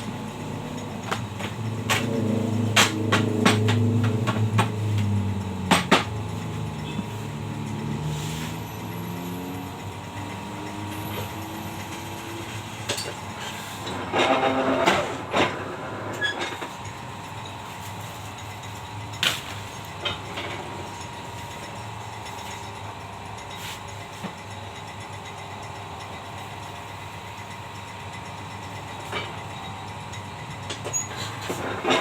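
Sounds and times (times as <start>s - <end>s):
cutting machine humming: 0.0s - 15.9s.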